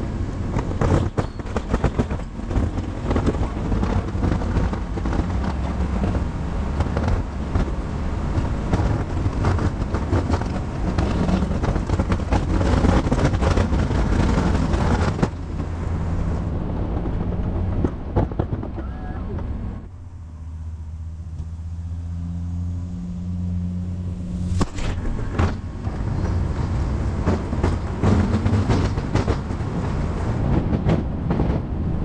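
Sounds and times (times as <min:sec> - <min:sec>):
snowplow pushing snow: 0:00.0 - 0:20.1
scattered clatter: 0:00.5 - 0:15.7.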